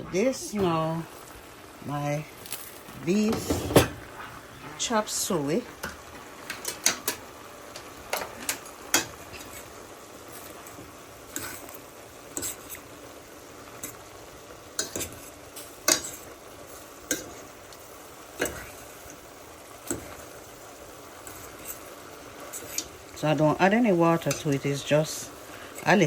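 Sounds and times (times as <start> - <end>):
food sizzling: 0.0 - 26.0
spoon knocking and scraping pot: 3.3 - 4.1.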